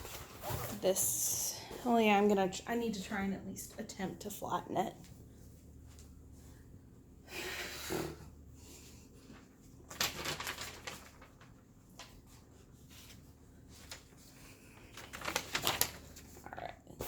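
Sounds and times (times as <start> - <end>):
canvas rustling and crinkling: 9.2 - 16.4.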